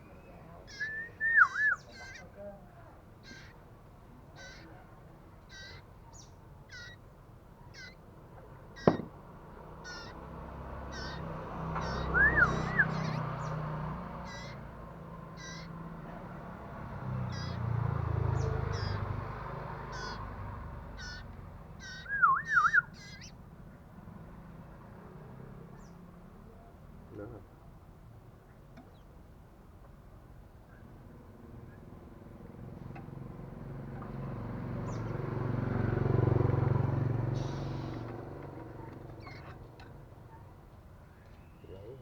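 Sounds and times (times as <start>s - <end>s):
bird chirping: 0.0s - 2.4s, 3.2s - 3.6s, 4.4s - 4.8s, 5.4s - 8.0s, 8.6s - 16.4s, 17.2s - 23.4s, 25.6s - 26.2s, 34.6s - 35.4s, 37.0s - 40.4s, 41.0s - 42.0s
sliding whistled bird notes: 0.8s - 1.9s, 12.0s - 13.0s, 22.0s - 22.9s.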